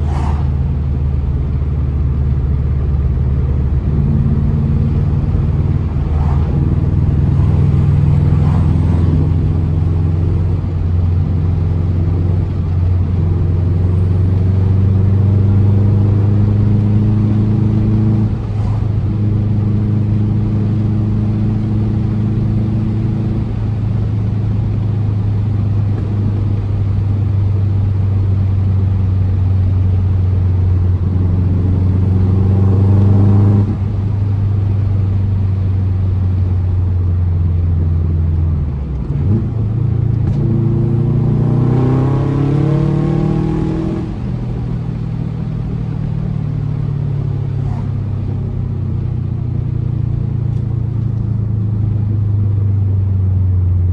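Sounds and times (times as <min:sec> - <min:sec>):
car engine accelerating: 0:00.0 - 0:53.9.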